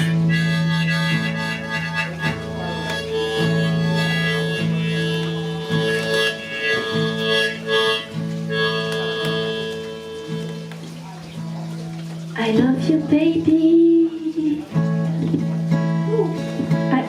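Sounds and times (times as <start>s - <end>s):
blues harmonica solo: 0.0s - 10.8s.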